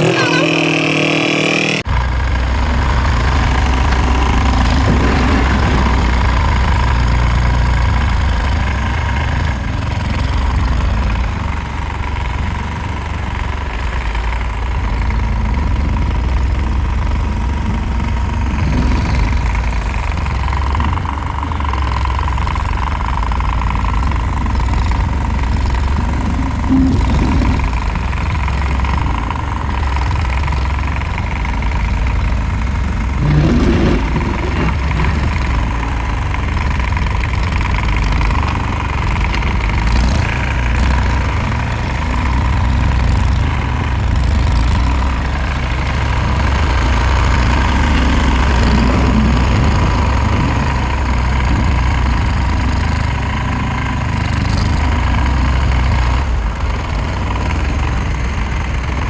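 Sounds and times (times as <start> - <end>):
tractor engine running: 0.0 - 59.0
thin steady whine: 23.1 - 39.6.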